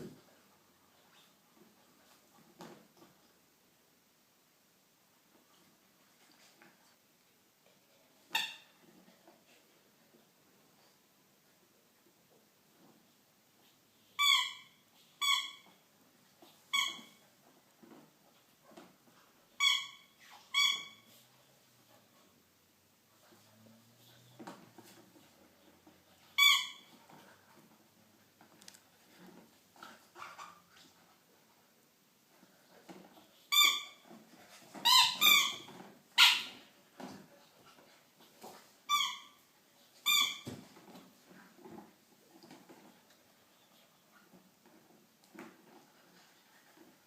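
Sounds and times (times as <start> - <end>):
squeaky dog toy squeaking: 8.3 - 8.8, 14.1 - 15.8, 16.7 - 17.2, 19.5 - 21.2, 26.2 - 27.0, 33.4 - 34.0, 34.8 - 36.6, 38.8 - 39.4, 40.0 - 40.6.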